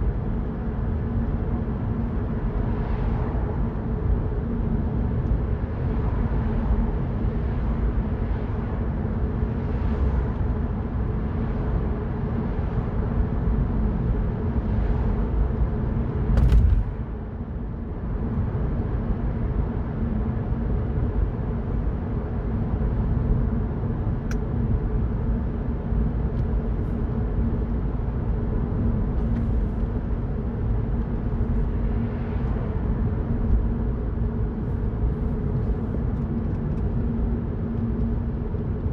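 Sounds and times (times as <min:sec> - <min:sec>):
road and tyre noise: 0:00.0 - 0:38.9
loud thump: 0:16.3 - 0:17.3
car engine running: 0:16.4 - 0:17.3.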